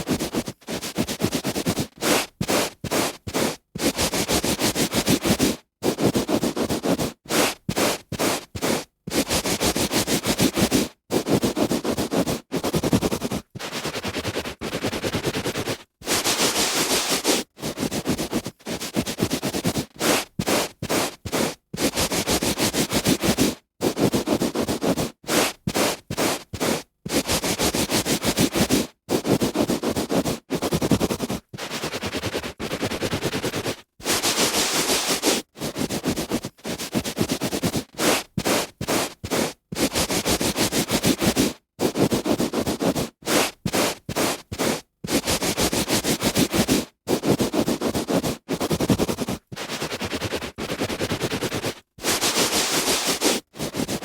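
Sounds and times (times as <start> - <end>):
hand rubbing on carpet: 0.0 - 54.0.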